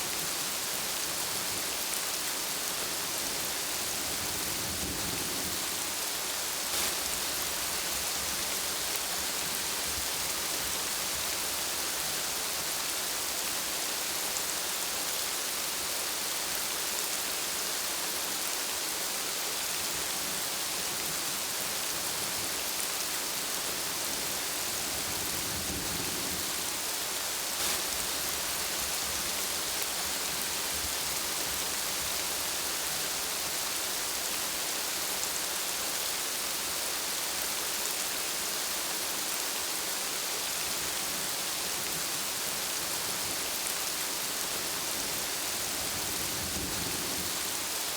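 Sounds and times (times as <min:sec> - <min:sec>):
heavy rain in a forest: 0:00.0 - 0:47.9.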